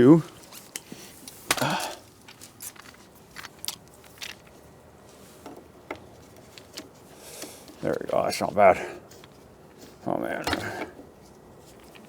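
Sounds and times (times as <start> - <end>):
lock hardware clicking: 10.4 - 11.1.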